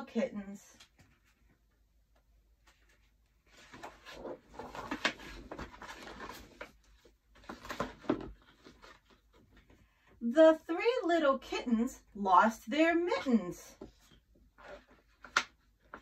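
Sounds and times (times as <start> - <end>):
paper rustling as page turns: 2.6 - 9.7.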